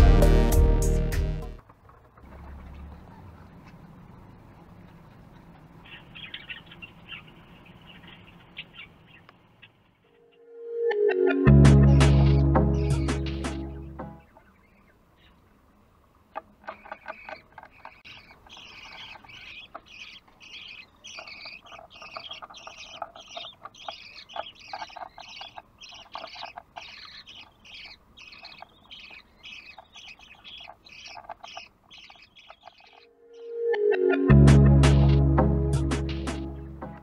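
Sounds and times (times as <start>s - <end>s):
budgerigars chirping: 5.1s - 9.9s, 11.7s - 15.4s, 16.4s - 33.6s, 34.8s - 37.0s.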